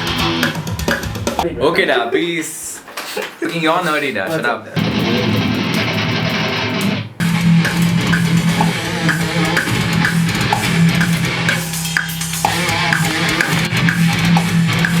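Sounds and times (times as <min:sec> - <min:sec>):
electric guitar: 0:00.0 - 0:01.4, 0:04.8 - 0:15.0
bass guitar: 0:00.0 - 0:01.7, 0:04.8 - 0:15.0
drum kit beat: 0:00.0 - 0:01.7, 0:04.8 - 0:15.0.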